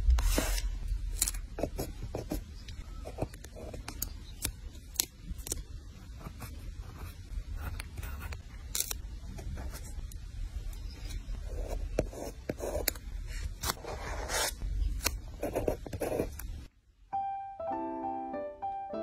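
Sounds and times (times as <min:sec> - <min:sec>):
soft piano music: 0:17.1 - 0:19.0.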